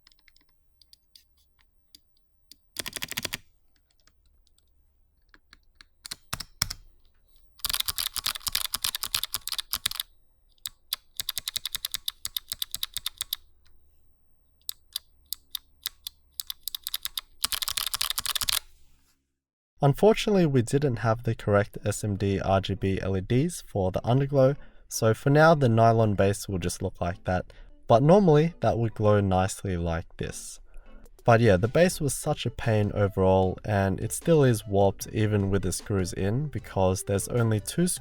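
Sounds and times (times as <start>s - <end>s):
clicky keyboard typing: 0.0s - 1.0s, 1.9s - 4.7s, 5.3s - 6.9s, 7.6s - 13.4s, 14.6s - 18.6s.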